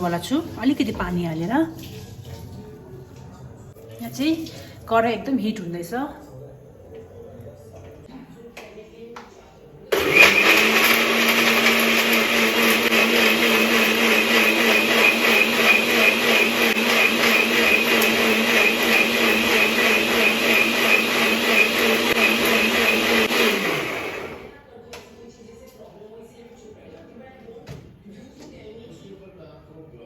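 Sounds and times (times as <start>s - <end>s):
mixer grinder running: 9.9s - 24.5s.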